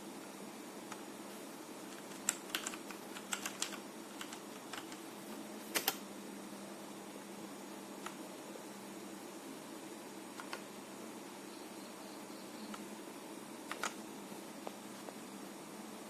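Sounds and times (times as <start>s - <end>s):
faint steady hum: 0.0s - 16.0s
mechanical keyboard keystrokes: 1.9s - 5.0s, 5.8s - 6.0s, 10.4s - 10.6s, 13.7s - 14.0s.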